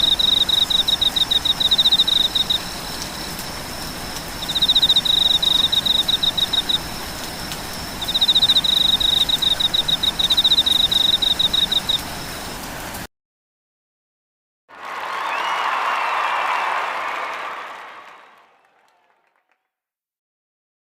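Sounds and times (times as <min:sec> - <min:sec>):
rain hiss: 0:00.0 - 0:13.1.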